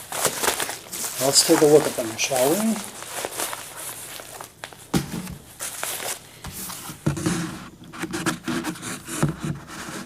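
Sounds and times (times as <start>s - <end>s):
packaging rustling and crinkling: 0.0s - 7.1s.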